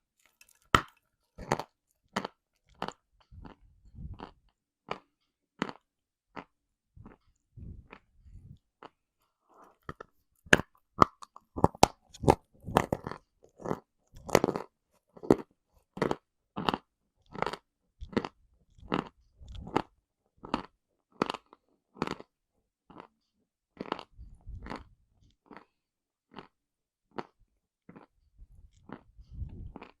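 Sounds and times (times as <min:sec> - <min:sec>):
chalk crunching being chewed: 0:00.2 - 0:08.1, 0:09.6 - 0:22.3, 0:28.7 - 0:30.0.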